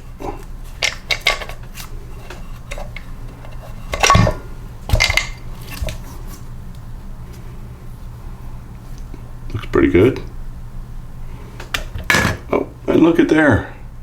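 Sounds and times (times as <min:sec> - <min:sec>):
metal parts clinking and clattering: 0:00.8 - 0:01.9.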